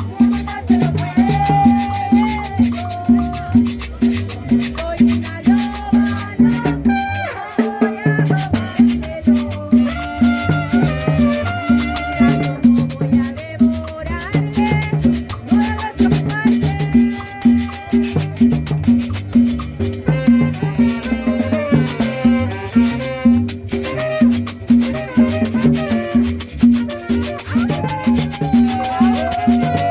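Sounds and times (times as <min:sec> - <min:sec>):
maracas shaking: 0:00.0 - 0:29.9
salsa music: 0:00.0 - 0:29.9.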